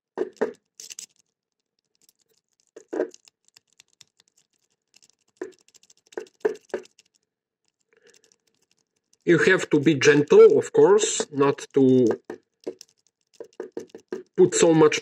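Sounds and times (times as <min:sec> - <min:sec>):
key scratching and rattling in lock: 0:00.3 - 0:09.3, 0:11.7 - 0:14.4.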